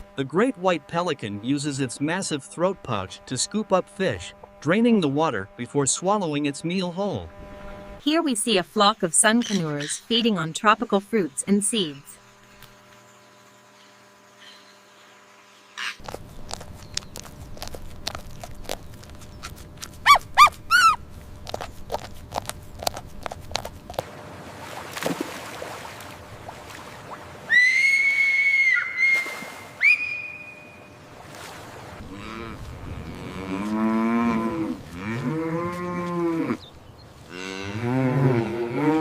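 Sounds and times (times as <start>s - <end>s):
animal clicks: 16.0s - 20.6s
low wavering farm animal calls: 20.0s - 21.0s
high whistle-like call: 27.5s - 31.0s.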